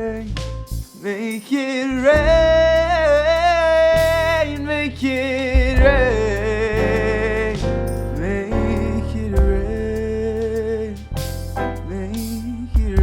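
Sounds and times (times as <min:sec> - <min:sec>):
instrumental accompaniment: 0:00.0 - 0:13.0
man singing long notes: 0:01.0 - 0:11.2.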